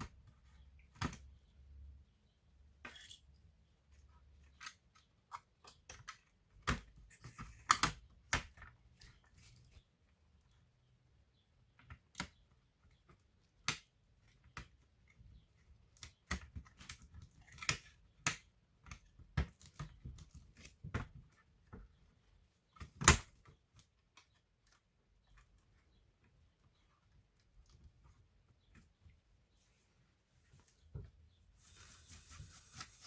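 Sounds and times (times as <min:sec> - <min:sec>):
laptop parts and tools clicking: 0:04.0 - 0:09.9.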